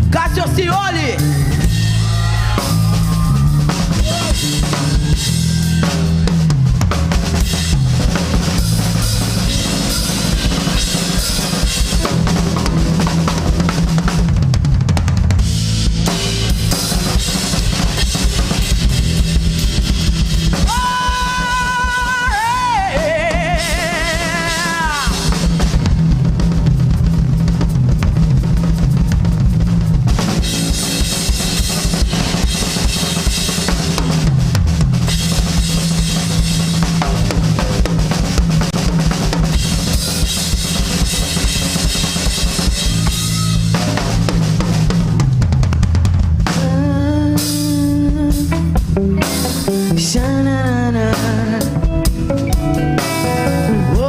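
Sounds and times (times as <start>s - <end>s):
drum kit: 0.0s - 54.0s
electric bass line: 0.0s - 54.0s
live rock band playing: 0.0s - 54.0s
electric guitar bending note: 51.6s - 54.0s.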